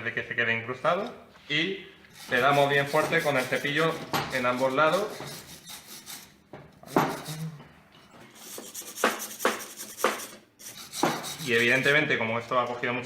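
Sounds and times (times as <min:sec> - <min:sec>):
stiff brush scrubbing metal: 0:02.1 - 0:07.6, 0:08.3 - 0:12.1
sharp knocks: 0:08.9 - 0:11.4.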